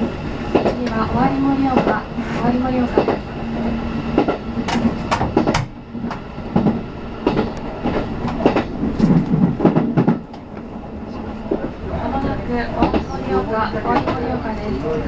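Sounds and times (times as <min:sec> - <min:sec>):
train wheels clicking over rail joints: 0:04.1 - 0:10.7.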